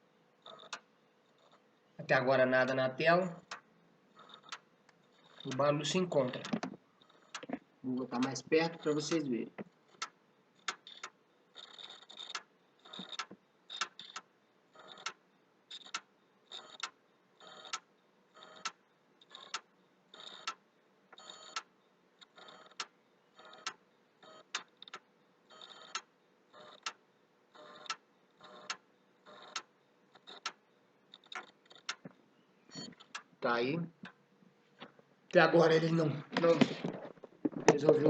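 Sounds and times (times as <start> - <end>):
hard drive clicking: 2.7 - 27.0, 27.6 - 33.3.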